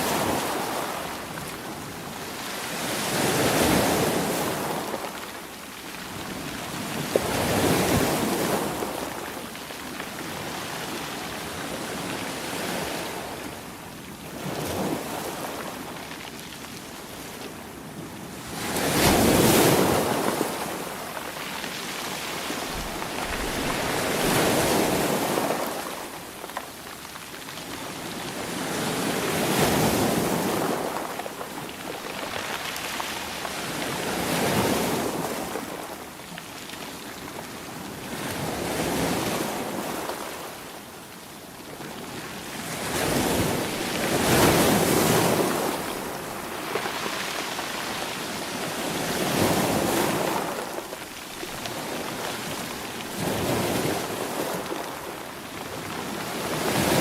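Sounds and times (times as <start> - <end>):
sea waves rolling in: 0.0 - 5.5, 16.8 - 41.0, 41.8 - 57.0.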